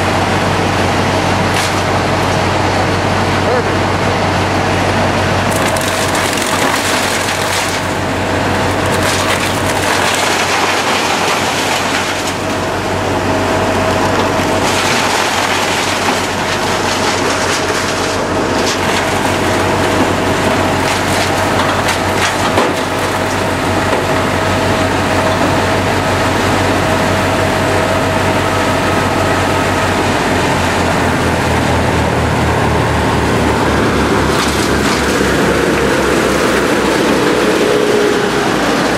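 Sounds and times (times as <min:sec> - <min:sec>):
wood chipper running: 0:00.0 - 0:38.9
wood knocks and cracks: 0:05.5 - 0:08.0, 0:08.7 - 0:12.4, 0:14.7 - 0:24.1.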